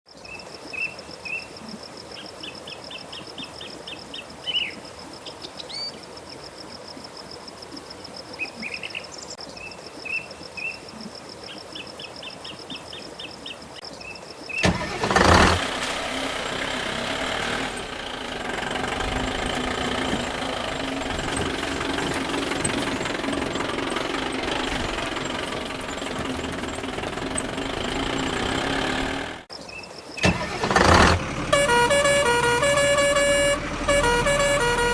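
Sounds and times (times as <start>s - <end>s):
vehicle engine starting and running: 14.6s - 29.5s, 30.2s - 34.9s.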